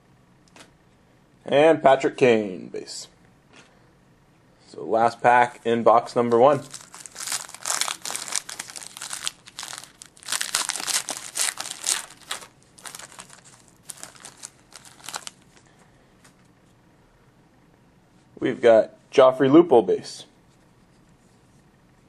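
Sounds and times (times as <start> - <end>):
card pack wrapper tearing: 6.6 - 15.6.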